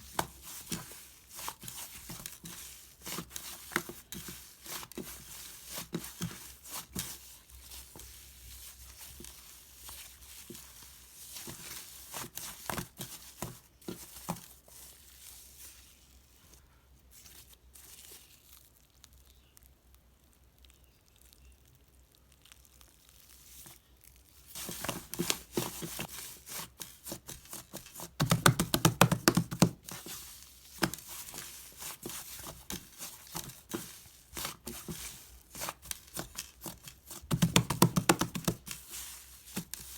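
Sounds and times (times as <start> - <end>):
slime crackling: 17.2 - 39.9.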